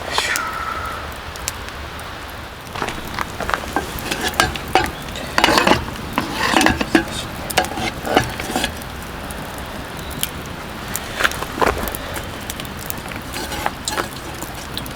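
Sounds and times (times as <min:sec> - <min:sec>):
metal utensil scraping a pan: 0:02.8 - 0:09.2, 0:11.0 - 0:14.9.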